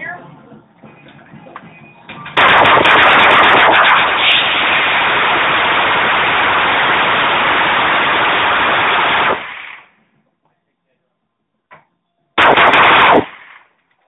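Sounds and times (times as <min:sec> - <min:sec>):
gatling gun firing continuously: 0:02.4 - 0:09.9, 0:12.4 - 0:13.8.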